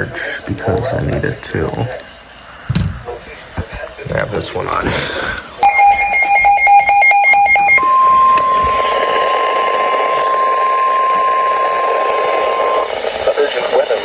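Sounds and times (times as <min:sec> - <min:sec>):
radio hiss: 0:00.0 - 0:02.1, 0:08.9 - 0:14.0
rapid electronic beeping: 0:05.6 - 0:14.0
steady warning alarm tone: 0:05.6 - 0:14.0.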